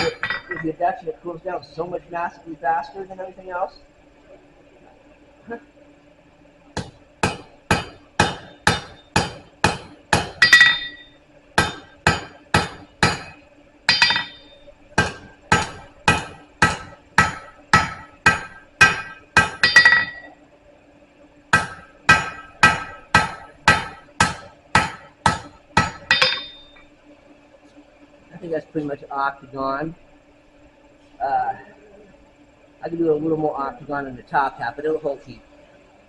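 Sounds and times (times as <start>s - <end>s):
hammer striking steel on anvil: 0.0s - 0.6s, 6.8s - 20.3s, 21.5s - 26.8s
steady low hum: 0.0s - 36.0s.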